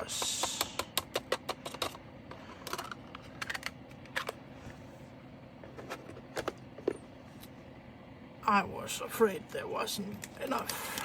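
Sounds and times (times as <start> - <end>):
plastic containers clicking and tapping: 0.1 - 2.0.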